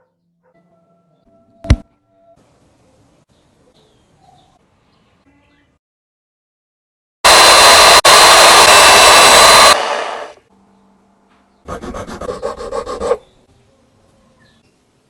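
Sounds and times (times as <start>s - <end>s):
electric power tool whining: 7.3s - 10.4s.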